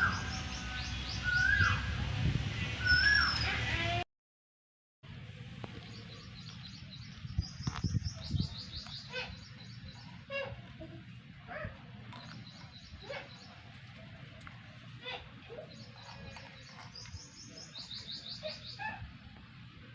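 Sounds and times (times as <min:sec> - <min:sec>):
birds chirping in trills: 0:00.0 - 0:01.8, 0:05.8 - 0:11.3, 0:12.2 - 0:13.8, 0:14.8 - 0:19.0
steady low rumble: 0:00.0 - 0:04.0, 0:05.0 - 0:19.9.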